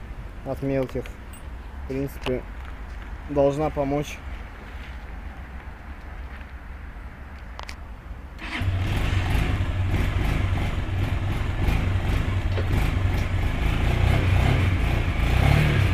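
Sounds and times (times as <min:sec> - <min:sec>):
motorcycle engine starting and idling: 0:08.4 - 0:15.9.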